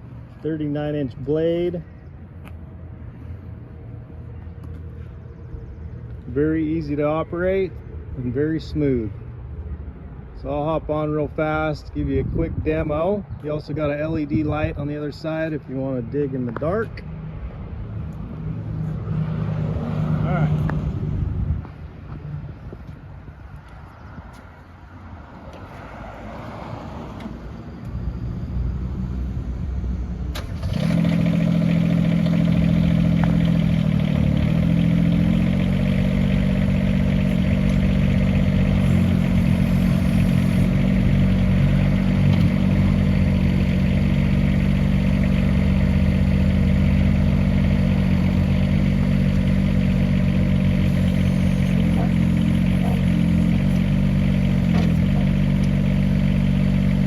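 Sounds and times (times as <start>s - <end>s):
excavator diesel engine: 30.1s - 57.0s.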